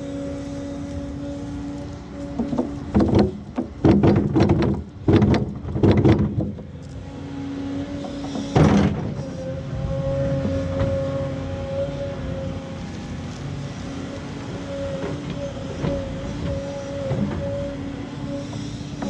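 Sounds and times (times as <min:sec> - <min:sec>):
excavator diesel engine running: 0:00.0 - 0:19.0
loud metal clanks and knocks: 0:02.4 - 0:06.7.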